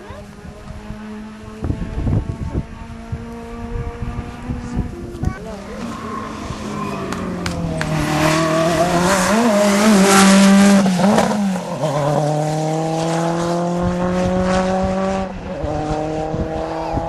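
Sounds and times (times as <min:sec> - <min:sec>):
rally car engine at full effort: 0:00.0 - 0:17.0
tyre noise: 0:02.3 - 0:14.9.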